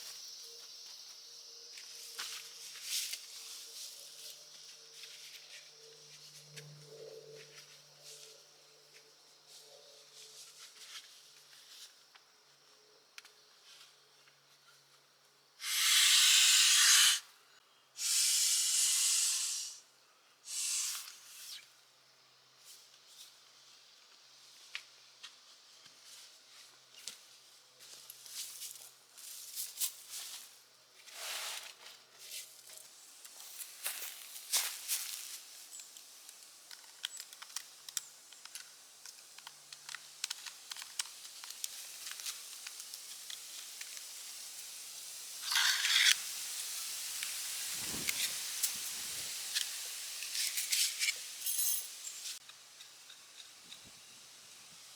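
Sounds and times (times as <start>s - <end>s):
loud steady hissing bursts: 15.6s - 17.4s, 18.0s - 21.6s, 33.0s - 54.9s
small clicks and ticks: 35.8s - 44.7s.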